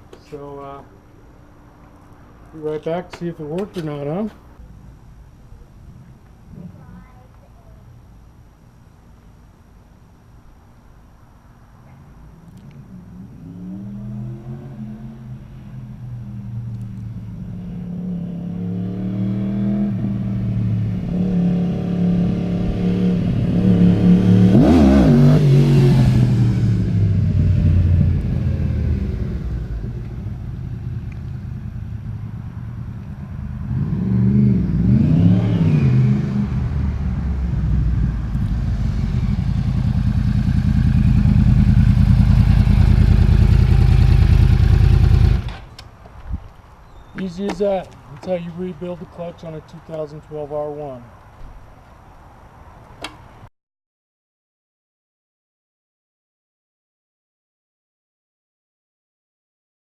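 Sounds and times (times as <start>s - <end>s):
motorcycle engine revving by: 12.9s - 45.7s.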